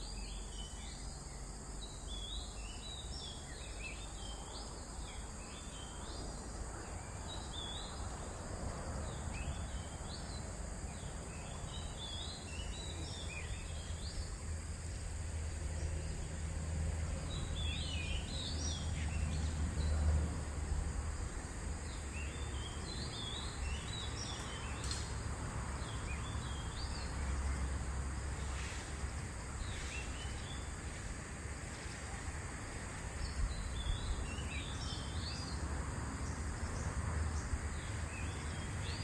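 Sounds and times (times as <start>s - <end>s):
insects buzzing: 0.0s - 39.0s
wind rumble on microphone: 33.1s - 39.0s.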